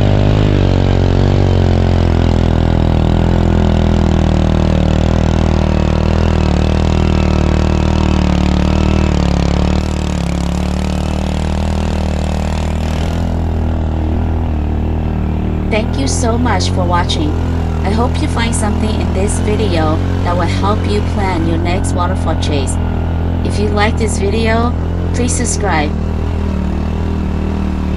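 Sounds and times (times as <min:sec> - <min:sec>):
motorcycle engine running: 0:00.0 - 0:27.9.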